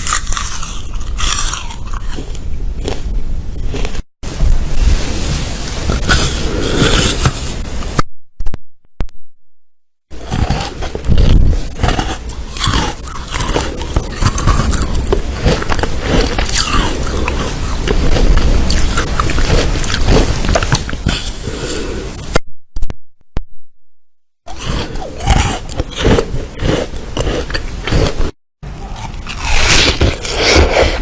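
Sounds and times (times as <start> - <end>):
crunchy biting and chewing: 0.0 - 4.0, 10.1 - 21.9, 24.5 - 31.0.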